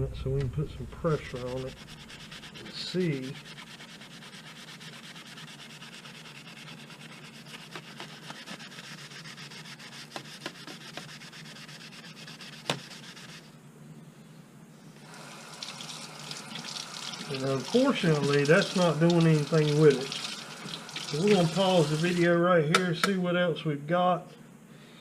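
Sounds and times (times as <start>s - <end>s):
scouring pad scrubbing plastic: 1.0s - 13.5s, 15.8s - 22.3s.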